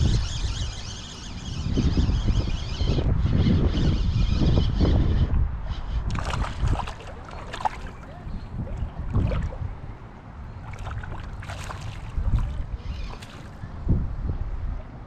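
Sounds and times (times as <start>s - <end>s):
wind rumble on microphone: 0.0s - 15.0s
river water splashing: 6.1s - 13.8s.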